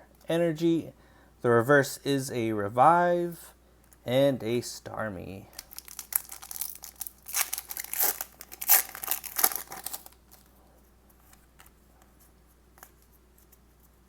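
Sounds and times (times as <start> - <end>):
foil pack crinkling and tearing: 5.6 - 10.5.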